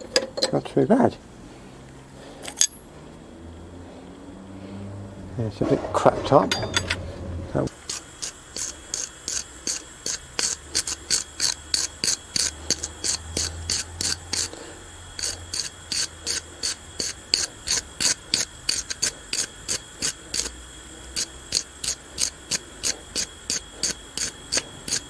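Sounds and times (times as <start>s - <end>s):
scraping a spark plug: 7.7s - 25.0s.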